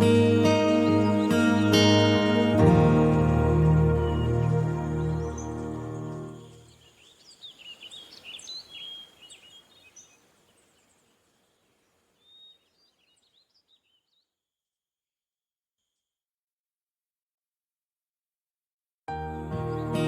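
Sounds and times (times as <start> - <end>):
guitar music: 0.0 - 6.6, 19.1 - 20.0
birds chirping and calling: 0.0 - 10.2.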